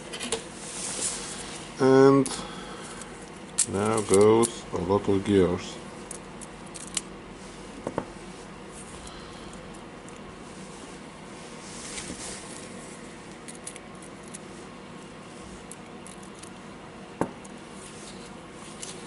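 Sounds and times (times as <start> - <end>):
metal gears clicking and rattling: 6.1 - 7.1.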